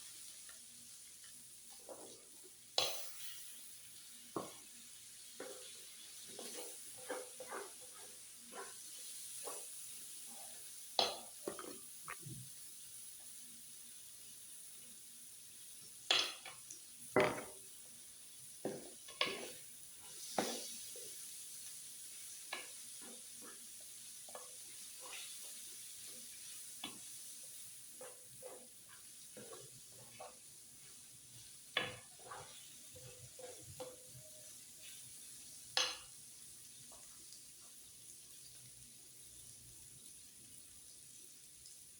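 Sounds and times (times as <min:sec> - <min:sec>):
faint steady sizzle: 0:00.0 - 0:41.9
utensils scraping on a griddle: 0:06.3 - 0:09.6, 0:28.0 - 0:30.9, 0:31.8 - 0:34.0.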